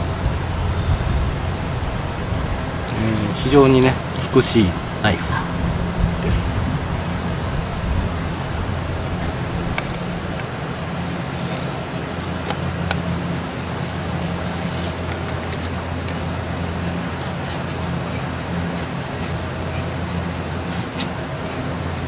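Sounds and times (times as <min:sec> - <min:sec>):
low engine-like drone: 0:00.0 - 0:22.0
knife scraping wood: 0:06.2 - 0:22.0.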